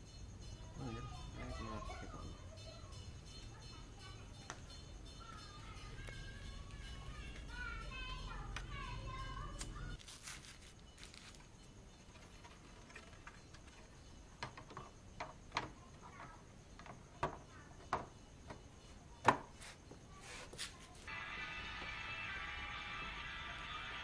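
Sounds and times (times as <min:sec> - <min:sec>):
sharp clicks and light knocks: 0:12.1 - 0:18.6
background music: 0:21.1 - 0:24.0.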